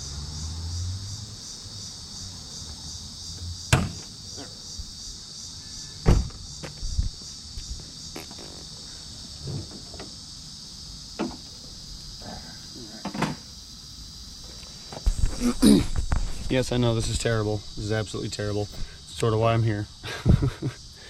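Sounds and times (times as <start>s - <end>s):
crickets chirring: 0.0s - 21.0s
knocks and clunks: 3.7s - 4.5s, 6.0s - 7.1s.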